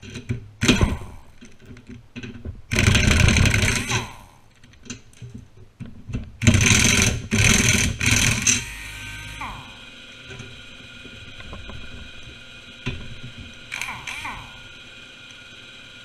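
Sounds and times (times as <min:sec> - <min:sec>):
power drill bursts: 0:06.5 - 0:09.9, 0:13.7 - 0:14.7.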